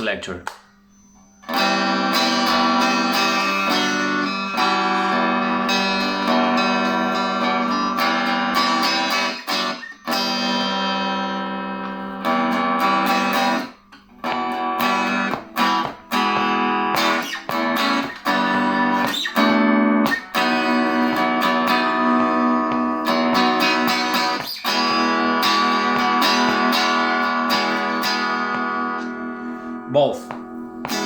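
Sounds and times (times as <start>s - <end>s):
electric guitar chords strummed: 1.2s - 31.0s.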